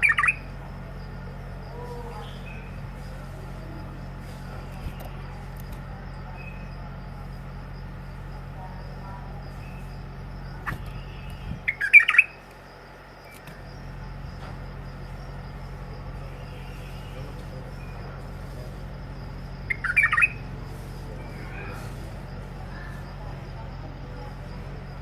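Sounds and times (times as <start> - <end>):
bulbul chirping: 0.0 - 0.5, 9.6 - 12.6, 19.4 - 20.5
steady low hum: 0.0 - 25.0.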